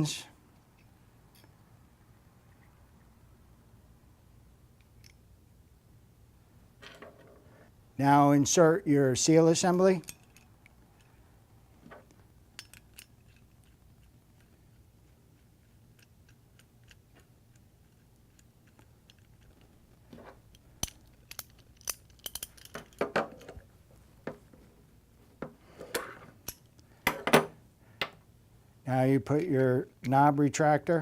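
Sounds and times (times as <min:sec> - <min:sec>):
small metal parts clicking: 0:10.0 - 0:11.2, 0:12.5 - 0:23.6.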